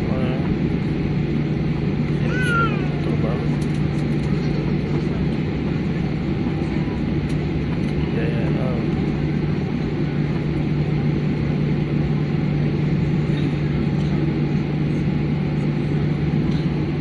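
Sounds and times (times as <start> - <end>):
airplane drone: 0.0 - 17.0.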